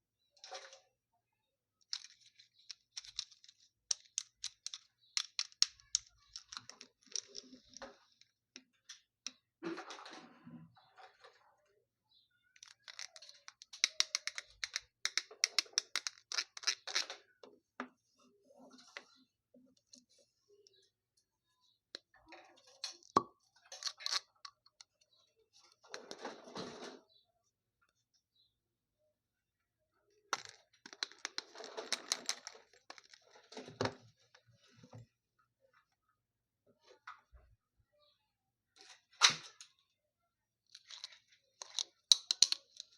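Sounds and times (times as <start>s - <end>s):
packaging clicks and crackles: 1.8s - 8.2s, 12.6s - 17.1s, 30.3s - 33.4s.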